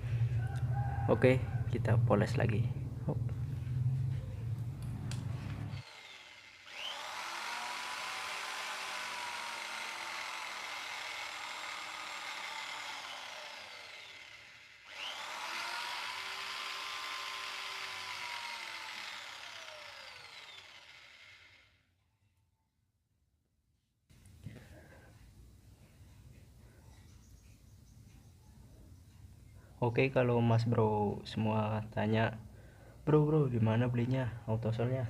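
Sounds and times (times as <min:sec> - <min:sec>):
electric drill whirring: 0:05.1 - 0:21.8.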